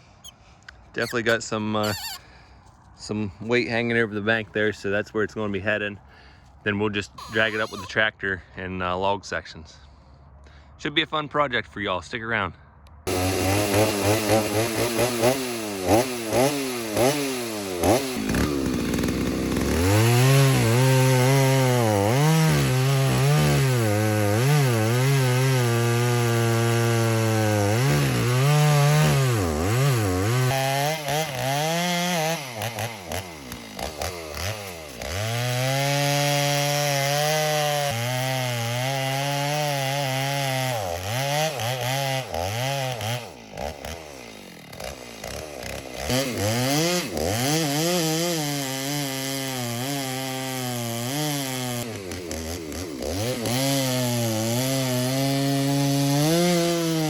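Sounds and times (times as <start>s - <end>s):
chainsaw revving: 1.0s - 2.3s, 7.2s - 7.9s, 13.1s - 57.0s.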